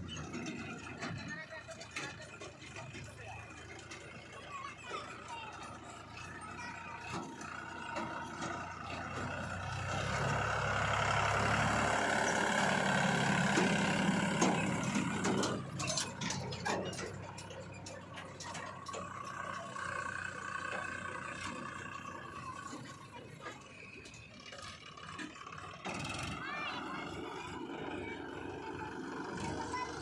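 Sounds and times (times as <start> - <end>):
heavy diesel engine working: 0.0 - 30.0
sharp knocks and rattles: 0.0 - 30.0.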